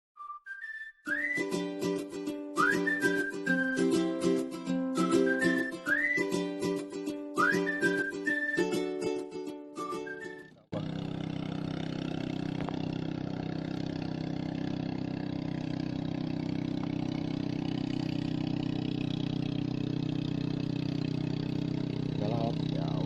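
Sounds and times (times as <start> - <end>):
music: 1.1 - 10.6
engine running steadily: 10.8 - 23.0.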